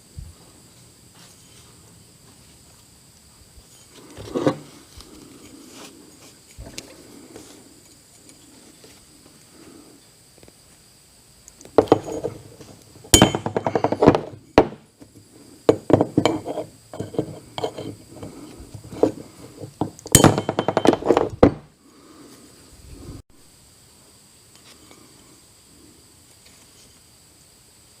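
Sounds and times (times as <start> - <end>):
metal tools clinking and rattling: 11.8 - 14.2, 20.1 - 21.4.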